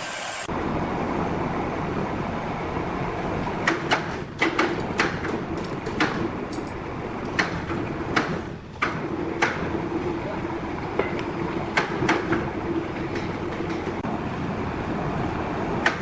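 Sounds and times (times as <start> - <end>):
sawmill machinery running: 0.0 - 16.0
sharp clacks and knocks: 3.6 - 9.7, 10.9 - 14.0.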